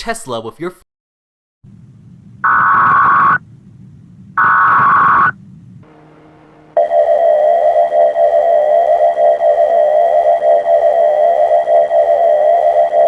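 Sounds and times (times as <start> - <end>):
low hum: 1.6 - 13.0
buzzing digital header tones: 2.4 - 3.4, 4.4 - 5.4
electronic attention tone: 2.4 - 3.4, 4.4 - 13.0.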